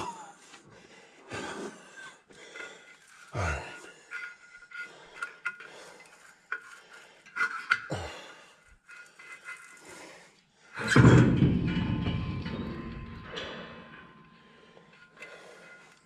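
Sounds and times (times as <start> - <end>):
metal parts clinking and clanking: 4.1 - 8.1, 10.8 - 16.0
loud heavy metal clang: 10.8 - 14.7.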